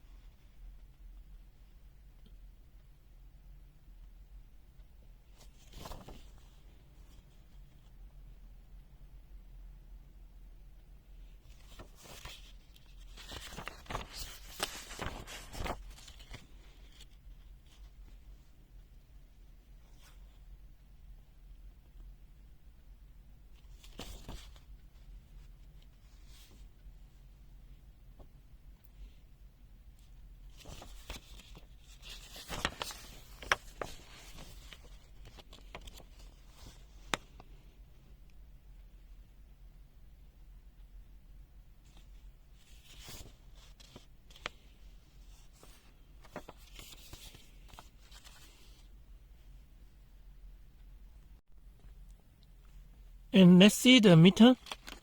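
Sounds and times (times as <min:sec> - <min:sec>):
crinkly rustling: 0:11.5 - 0:18.0, 0:30.5 - 0:37.4, 0:41.9 - 0:48.9.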